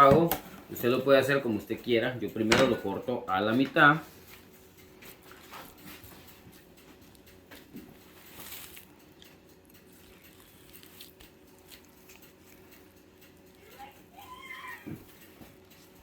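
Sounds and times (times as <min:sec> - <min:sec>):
light ticks and scrapes: 0:04.0 - 0:13.4.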